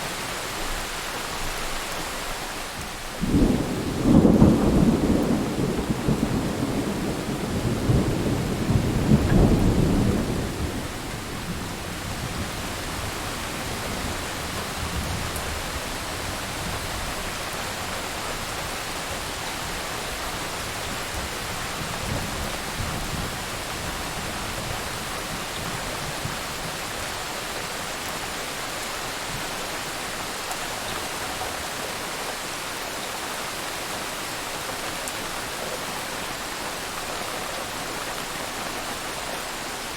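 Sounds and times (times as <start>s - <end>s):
rain falling: 0.0s - 39.9s
thunder rumbling: 3.2s - 17.5s.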